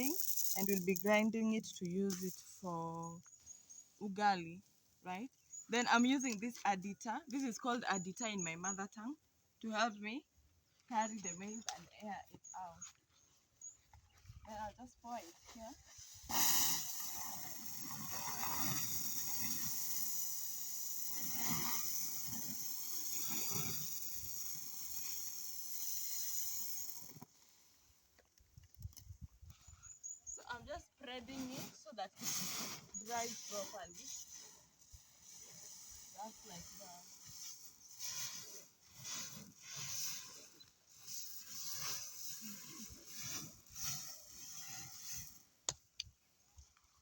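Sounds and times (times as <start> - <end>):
maize kernels pouring: 0.0 - 2.6, 16.0 - 27.3, 32.2 - 45.4.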